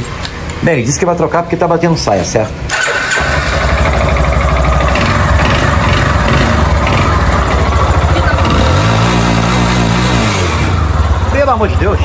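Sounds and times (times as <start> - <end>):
motorcycle engine idling roughly: 2.8 - 10.0, 10.6 - 12.0.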